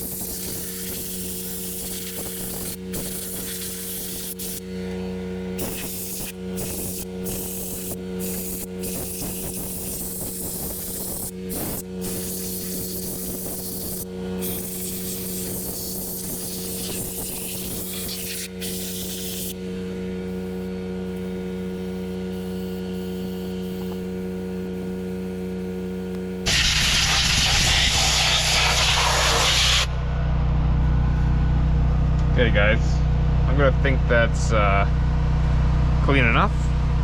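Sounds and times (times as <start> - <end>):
compressed air hissing: 0.0 - 4.6, 5.6 - 19.6, 22.3 - 25.6, 26.4 - 29.9
air compressor running: 0.0 - 37.0
generator humming: 0.0 - 37.0.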